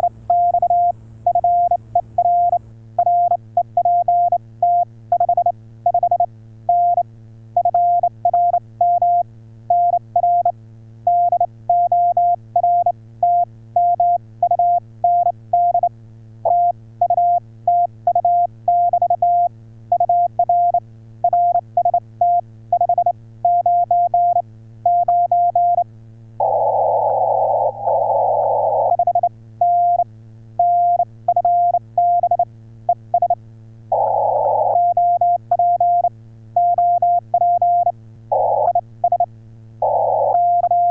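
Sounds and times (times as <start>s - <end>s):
low hum: 0.0s - 4.4s, 20.2s - 40.9s
morse code tone: 16.5s - 25.8s, 30.6s - 32.4s, 33.1s - 40.9s
radio hiss bursts: 26.4s - 29.0s, 33.9s - 34.9s.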